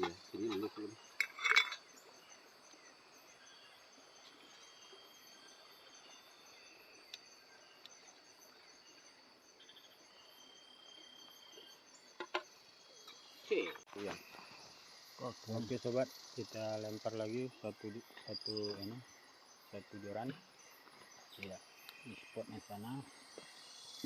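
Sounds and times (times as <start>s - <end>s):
crickets chirring: 0.0s - 24.0s
faint ticks: 7.1s - 8.0s
low even hiss: 13.4s - 19.0s.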